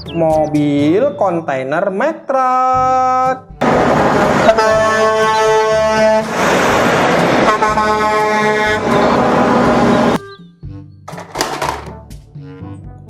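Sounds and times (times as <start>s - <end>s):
loud truck engine: 3.6s - 10.2s
truck air horn blasts: 3.6s - 10.2s.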